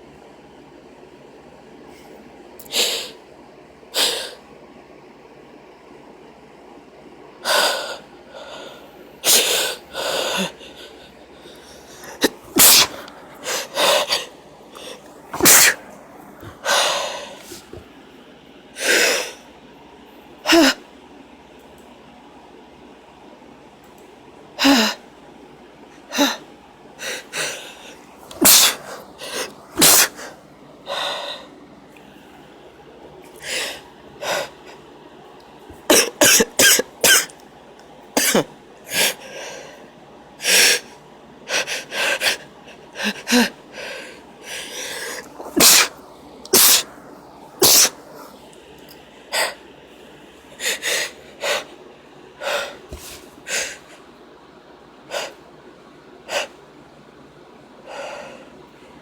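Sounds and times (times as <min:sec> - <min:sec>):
woman sniffing: 0:09.2 - 0:17.8, 0:27.0 - 0:31.5, 0:44.5 - 0:47.0, 0:47.6 - 0:48.5, 0:52.4 - 0:53.9
woman sneezing: 0:12.0 - 0:17.8, 0:28.3 - 0:30.3, 0:35.8 - 0:37.3, 0:38.2 - 0:38.5, 0:44.8 - 0:47.0, 0:47.6 - 0:48.4.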